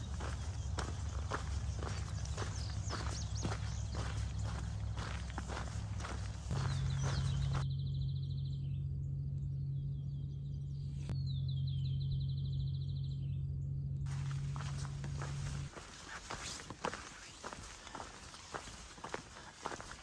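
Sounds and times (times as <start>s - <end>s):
songbird singing: 0.0s - 8.8s, 14.1s - 20.0s.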